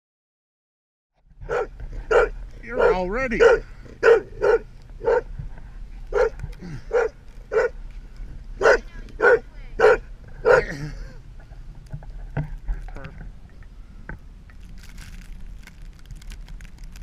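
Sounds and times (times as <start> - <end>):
dog barking: 1.4 - 5.3, 6.1 - 7.8, 8.6 - 10.8.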